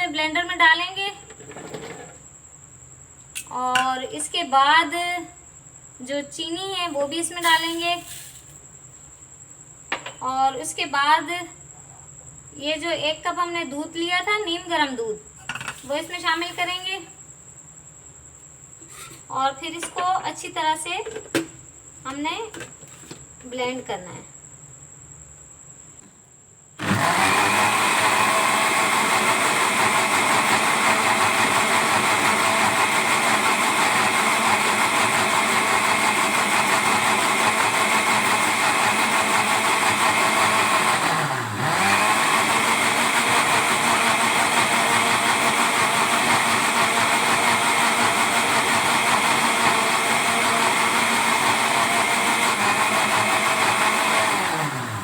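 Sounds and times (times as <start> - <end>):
blender motor running: 26.8 - 55.0.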